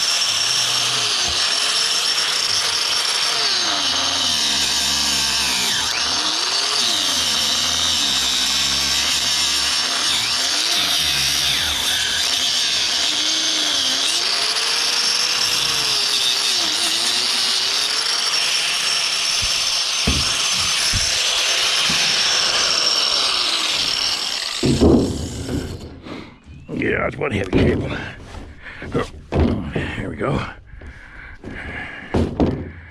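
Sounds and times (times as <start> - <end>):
power tool cutting cable: 0.0 - 26.0.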